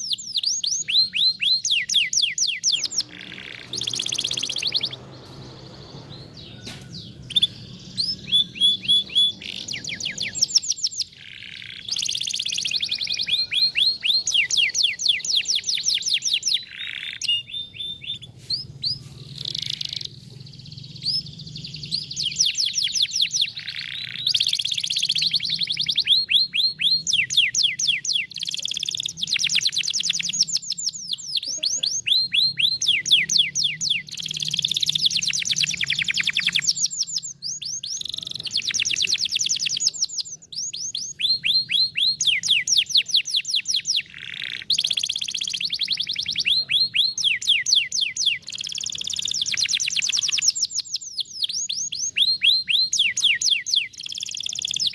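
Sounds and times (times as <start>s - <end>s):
canary singing in fast trills: 0.0s - 54.9s.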